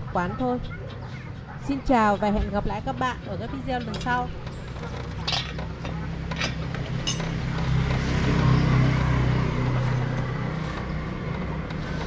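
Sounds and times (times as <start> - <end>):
motor vehicle engine hum: 0.0 - 12.0
steady low traffic rumble: 0.0 - 12.0.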